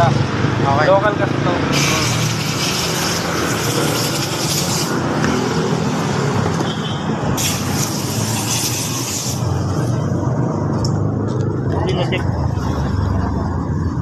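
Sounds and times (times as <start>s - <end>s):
hiss: 1.7s - 5.0s, 7.4s - 9.6s.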